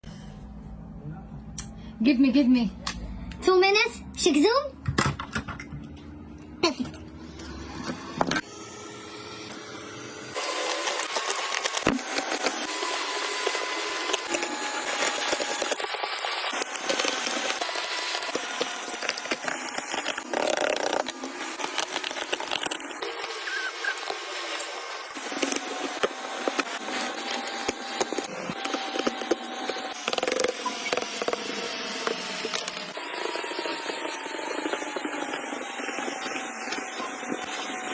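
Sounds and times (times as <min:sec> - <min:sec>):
hand tools scraping a phone: 0:16.5 - 0:32.2.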